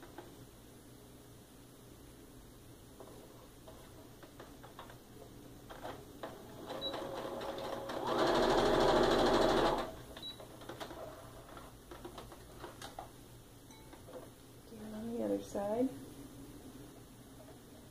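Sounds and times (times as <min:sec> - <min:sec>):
sewing machine stitching: 0:05.7 - 0:10.0.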